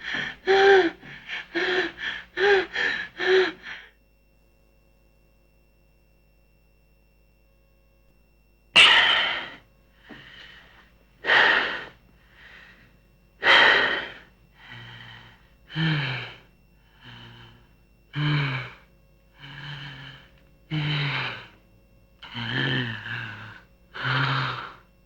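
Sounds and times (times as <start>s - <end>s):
gasping moans: 0.0s - 3.9s, 8.8s - 9.6s, 13.4s - 21.6s, 22.2s - 24.8s
person panting heavily: 0.0s - 3.9s, 8.8s - 21.6s.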